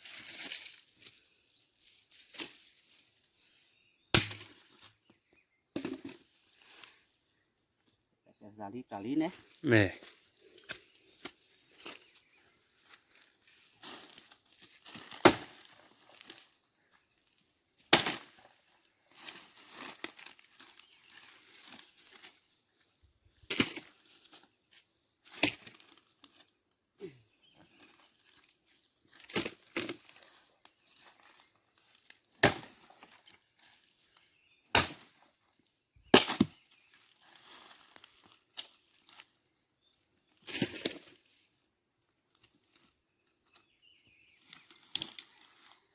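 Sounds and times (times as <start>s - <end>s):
axe striking dry wood: 4.1s - 4.6s, 15.1s - 15.6s, 17.9s - 18.4s, 32.4s - 33.0s, 34.7s - 35.1s, 36.1s - 36.6s.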